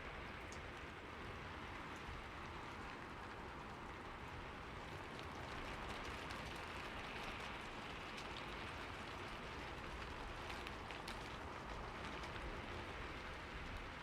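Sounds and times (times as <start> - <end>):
raindrops ticking on a surface: 0.0 - 14.0.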